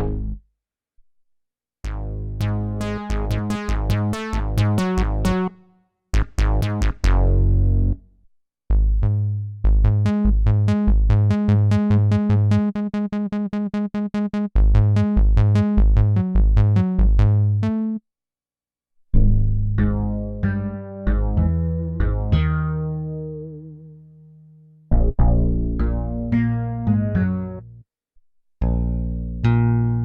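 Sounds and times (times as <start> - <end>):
synthesizer notes over deep bass: 0.0 - 0.4, 1.9 - 5.5, 6.2 - 8.0, 19.2 - 24.0, 24.9 - 27.8.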